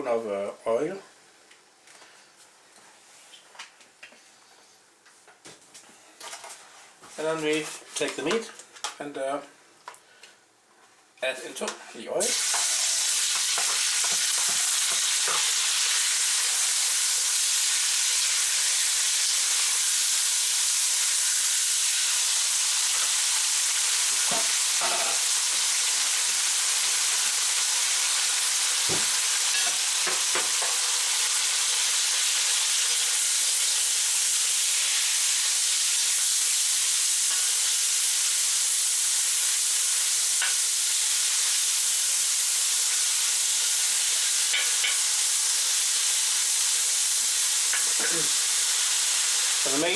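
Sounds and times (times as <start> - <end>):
meat sizzling in oil: 12.2 - 49.9.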